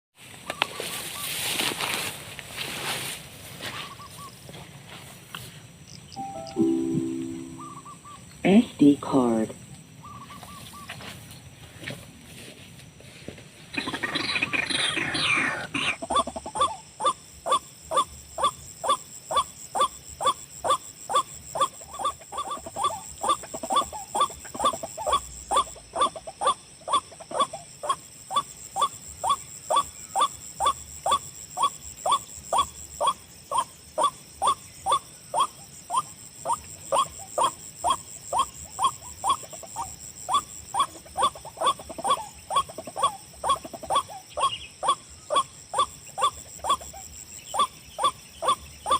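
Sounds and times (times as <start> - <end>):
rustling: 0.2 - 5.6.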